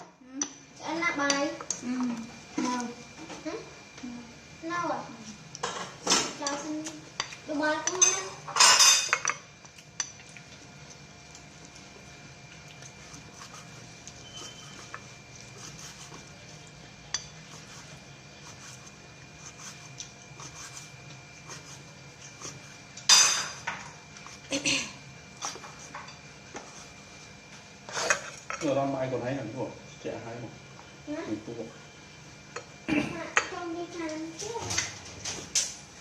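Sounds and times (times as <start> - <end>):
steady faint hum: 0.0 - 36.0
cutlery clinking on dishes: 7.2 - 9.4, 23.1 - 23.8.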